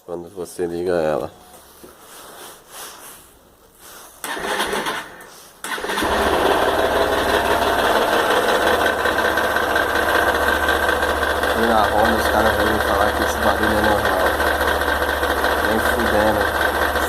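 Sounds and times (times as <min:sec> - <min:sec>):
electric starter cranking: 0:04.2 - 0:17.0
motorcycle engine idling: 0:06.0 - 0:17.0.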